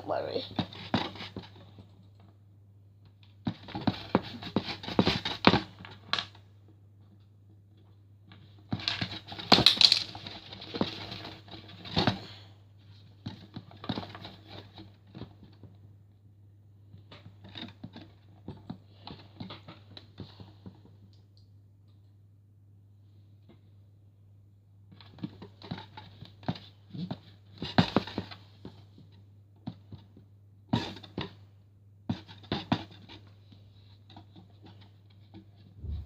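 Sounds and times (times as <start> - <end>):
toy tools tapping and scraping: 8.9 - 10.2
steady low hum: 35.7 - 36.0.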